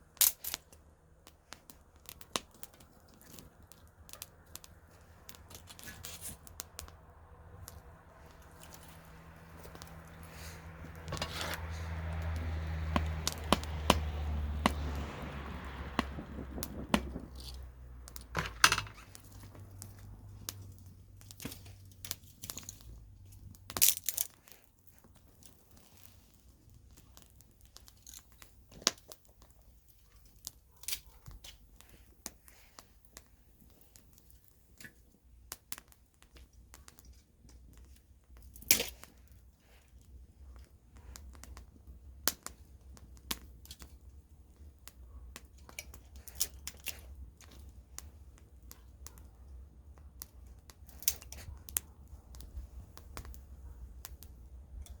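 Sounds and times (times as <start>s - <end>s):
campfire crackling and popping: 0.0s - 55.0s
low rumbling rush: 6.9s - 18.1s.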